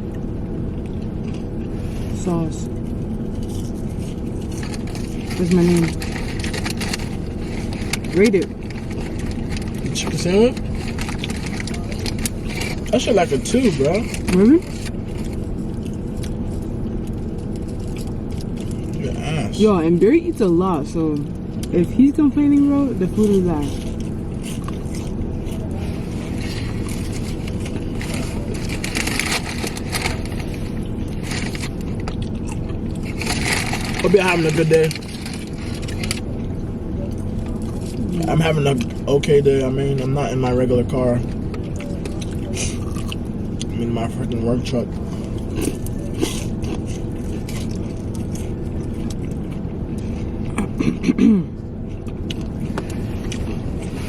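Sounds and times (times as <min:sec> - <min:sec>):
crunching of eating fried chicken: 0:00.0 - 0:19.6, 0:23.1 - 0:54.0
low rumble in truck cab: 0:00.0 - 0:54.0
faint clicks and rustles: 0:02.8 - 0:19.0, 0:21.0 - 0:39.6.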